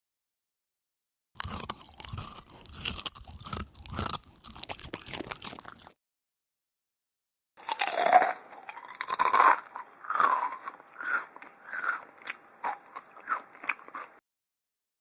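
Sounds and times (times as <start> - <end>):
person chewing food: 1.4 - 6.0, 7.6 - 14.2.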